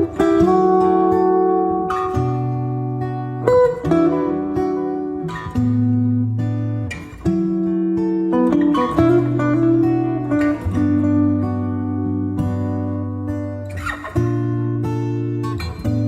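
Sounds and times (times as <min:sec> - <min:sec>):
acoustic guitar chords: 0:00.0 - 0:16.0.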